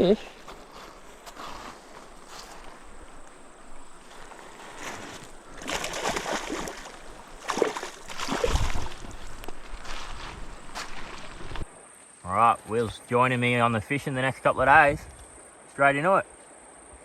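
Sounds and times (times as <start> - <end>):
water sloshing and splashing: 0.7 - 11.7.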